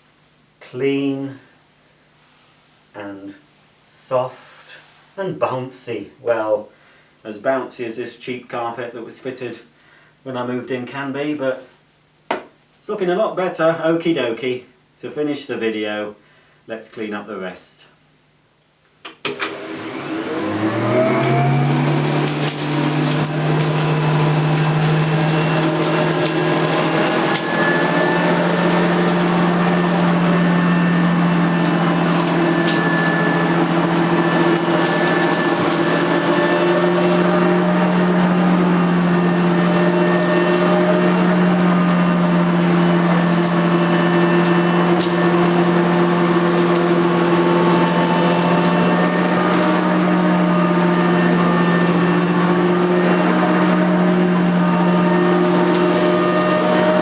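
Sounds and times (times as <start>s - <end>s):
vacuum cleaner motor hum: 19.2s - 57.0s
debris ticking in vacuum: 21.0s - 57.0s.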